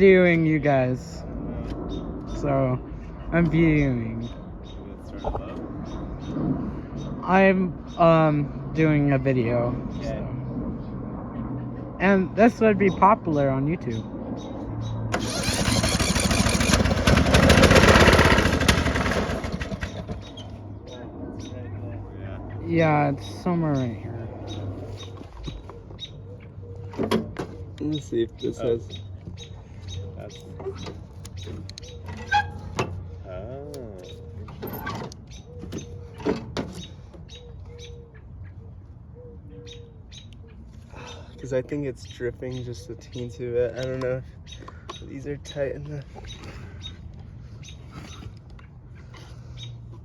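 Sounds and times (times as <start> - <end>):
small engine turning over on starter: 15.1 - 20.4.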